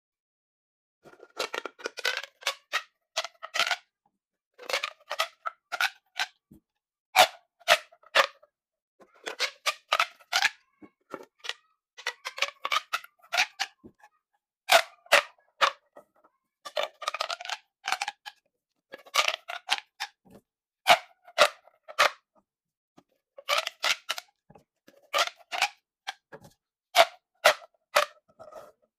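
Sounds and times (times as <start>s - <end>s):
plastic pop tubes popping: 1.1s - 3.9s, 4.6s - 6.4s, 9.3s - 14.0s, 14.7s - 15.9s, 16.7s - 18.4s, 19.0s - 22.3s, 23.4s - 28.6s.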